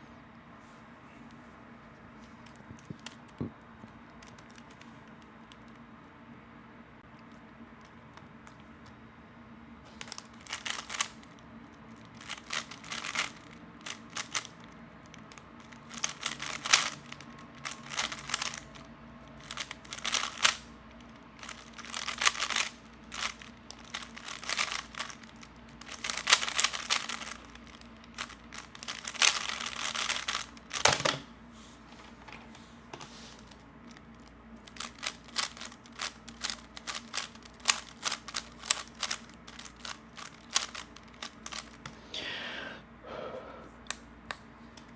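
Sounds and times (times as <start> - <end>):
puzzle cube plastic clicking: 2.3 - 5.8, 10.0 - 18.8, 19.4 - 31.2, 33.9 - 42.0.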